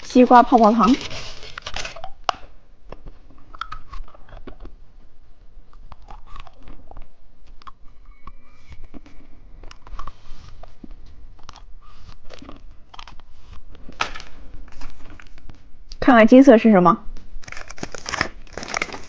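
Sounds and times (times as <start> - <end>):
chewing gum close up: 5.7 - 10.6.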